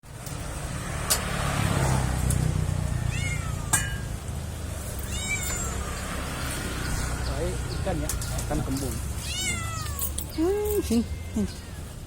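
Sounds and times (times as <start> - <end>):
cat meowing: 2.9 - 4.0, 5.0 - 6.0, 9.2 - 12.0.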